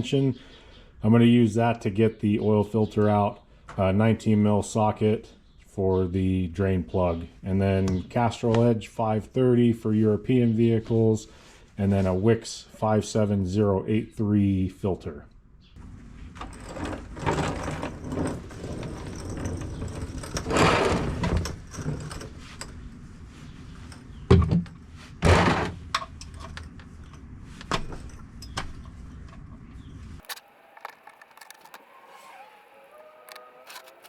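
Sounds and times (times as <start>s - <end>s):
clattering and knocking: 16.3s - 22.8s.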